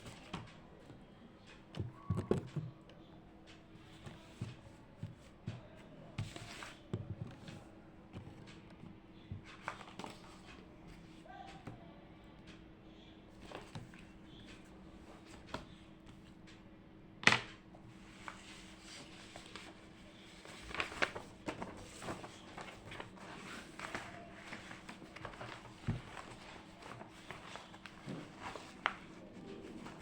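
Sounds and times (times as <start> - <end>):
clicks and taps of handling: 0.0 - 11.8
faint steady hum: 0.0 - 30.0.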